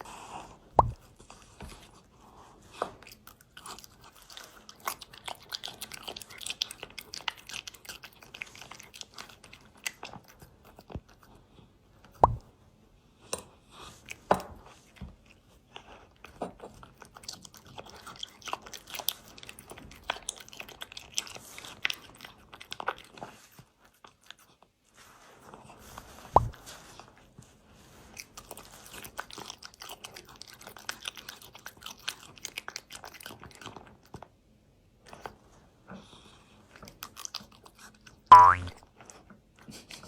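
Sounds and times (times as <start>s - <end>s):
cat chewing food: 0.0s - 12.6s, 13.2s - 24.7s, 28.0s - 34.4s, 35.1s - 38.2s
brief sharp sound: 38.3s - 38.8s.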